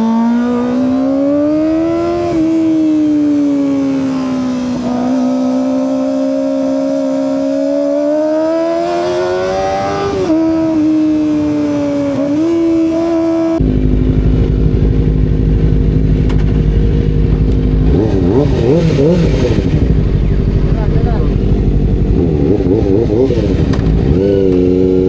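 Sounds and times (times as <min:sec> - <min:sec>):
motorcycle engine high-pitched note: 0:00.0 - 0:25.0
loud low rumble: 0:13.6 - 0:24.6.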